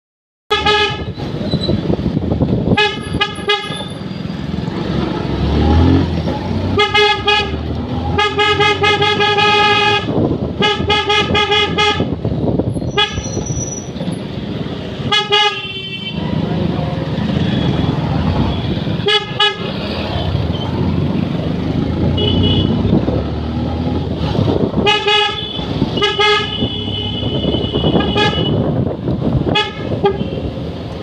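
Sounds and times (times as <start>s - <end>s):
engine and traffic noise: 0.5s - 31.0s
motorcycle horn beeping: 15.1s - 16.3s, 22.2s - 22.8s, 24.8s - 28.7s.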